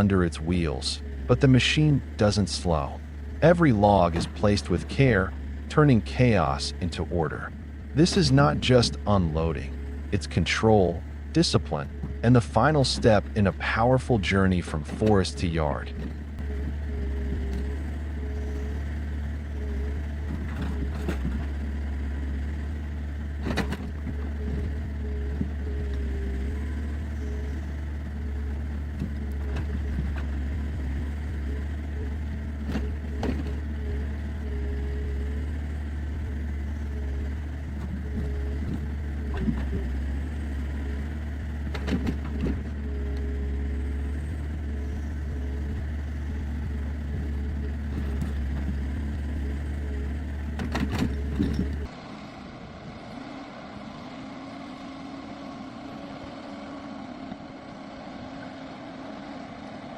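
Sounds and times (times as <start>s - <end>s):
heavy machine engine running: 0.0s - 59.9s
quieter engine: 0.0s - 59.9s
sharp knocks and clunks: 41.6s - 42.8s, 50.5s - 51.9s.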